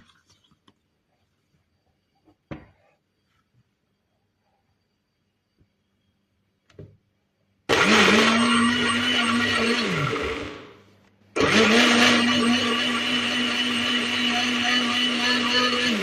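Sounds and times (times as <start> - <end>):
blender motor running: 7.7 - 10.8, 11.4 - 16.0.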